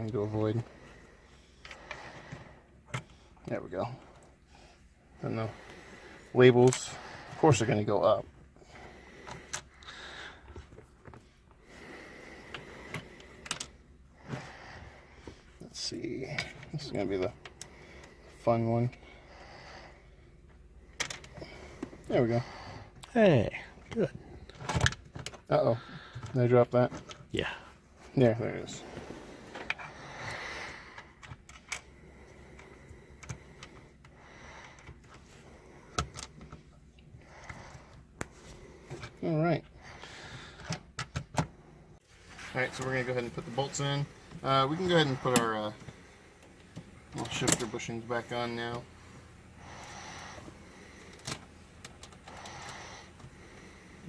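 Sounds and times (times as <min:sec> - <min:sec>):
light clicks and taps of parts: 0:06.6 - 0:06.9, 0:12.5 - 0:13.8, 0:16.2 - 0:19.0, 0:20.4 - 0:22.2, 0:23.8 - 0:27.3, 0:31.0 - 0:39.2, 0:42.7 - 0:49.2, 0:50.4 - 0:54.0.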